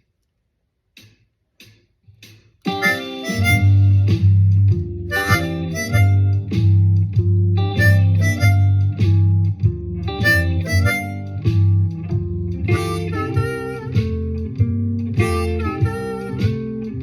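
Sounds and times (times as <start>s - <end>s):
harmonica blues licks: 2.7s - 4.3s, 5.1s - 6.5s, 7.8s - 9.0s, 10.2s - 11.4s, 12.7s - 14.5s, 15.2s - 17.0s
bass guitar: 2.7s - 17.0s
guitar: 2.7s - 17.0s
shuffle backing track: 2.7s - 17.0s.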